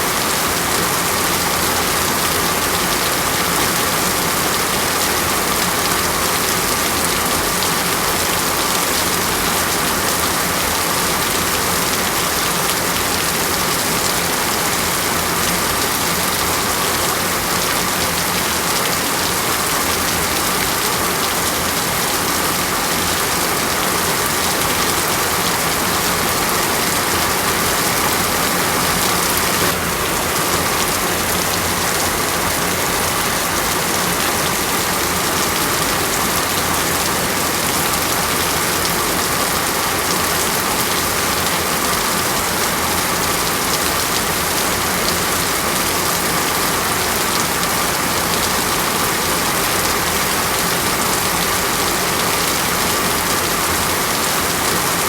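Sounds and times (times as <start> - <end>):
steady rain falling: 0.0 - 55.0.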